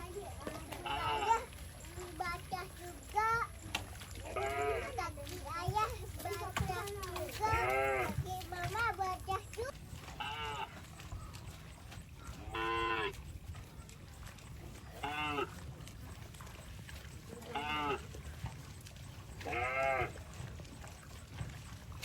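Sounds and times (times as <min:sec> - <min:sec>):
cow mooing: 0:04.2 - 0:05.0, 0:07.5 - 0:08.2, 0:10.2 - 0:10.8, 0:12.4 - 0:13.2, 0:15.0 - 0:15.6, 0:17.5 - 0:18.1, 0:19.4 - 0:20.3.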